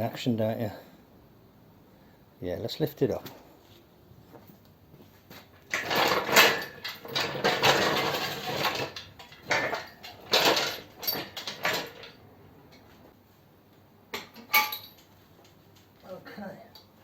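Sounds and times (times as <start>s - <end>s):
lifting gear clanking: 5.7s - 12.9s
metal on metal clinks: 14.2s - 15.2s.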